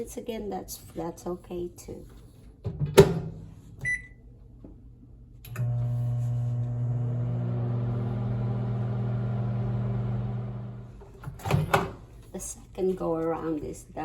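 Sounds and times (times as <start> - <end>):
microwave oven hum: 5.4 - 12.0.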